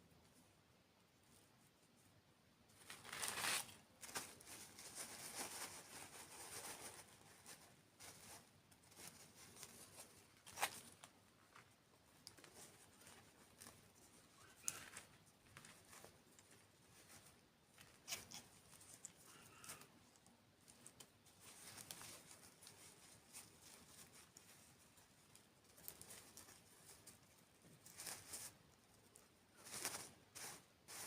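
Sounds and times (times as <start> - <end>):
food crackling and crinkling: 2.7 - 31.0.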